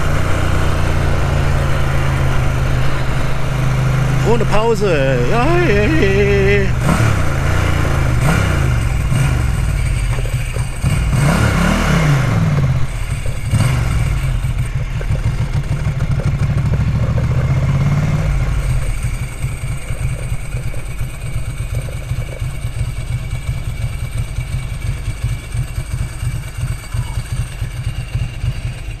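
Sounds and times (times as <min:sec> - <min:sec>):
motorcycle engine revving: 0:00.0 - 0:29.0.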